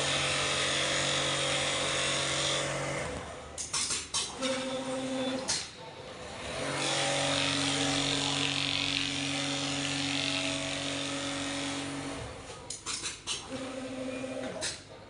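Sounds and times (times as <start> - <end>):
sewing machine running: 0.0 - 3.4, 6.2 - 12.4.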